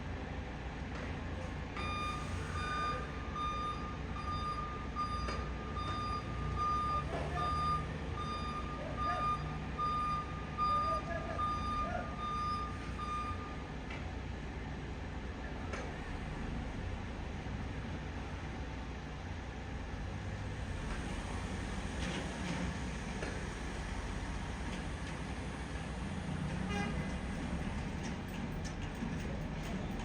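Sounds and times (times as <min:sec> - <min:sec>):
low engine rumble: 0:00.4 - 0:30.0
reversing alarm beeping: 0:01.8 - 0:13.6.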